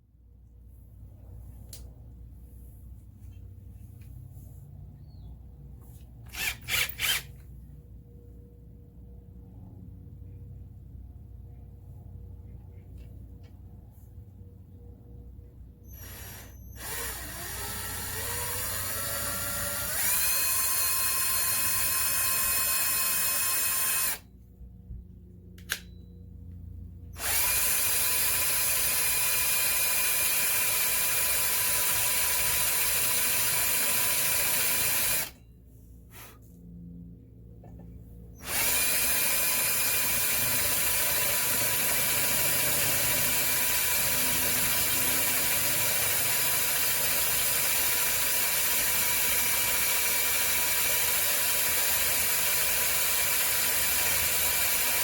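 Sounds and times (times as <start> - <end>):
power drill whining: 6.2 - 7.4, 15.9 - 24.2, 27.2 - 35.4, 38.4 - 55.0.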